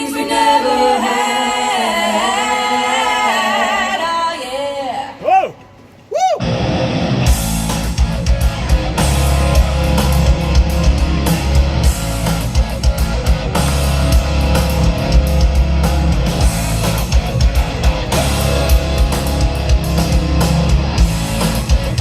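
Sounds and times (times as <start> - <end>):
loud rock music: 6.4 - 22.0.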